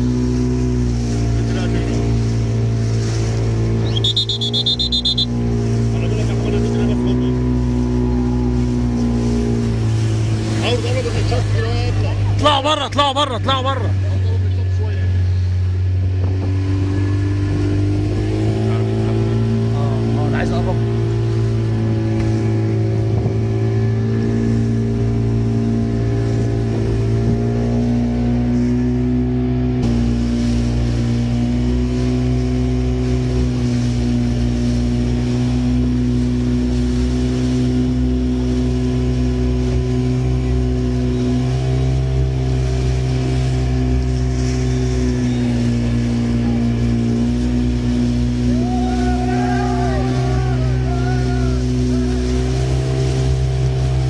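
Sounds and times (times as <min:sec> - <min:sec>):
motorboat engine droning: 0:00.0 - 0:54.0
short wavering high sounds: 0:03.8 - 0:05.4.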